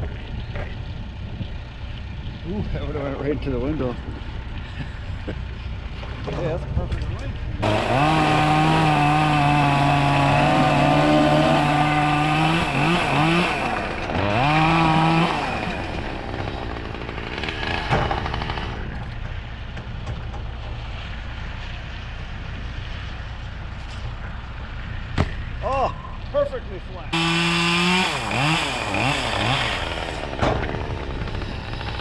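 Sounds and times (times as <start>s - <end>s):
chainsaw revving: 7.6s - 19.0s, 27.1s - 32.0s.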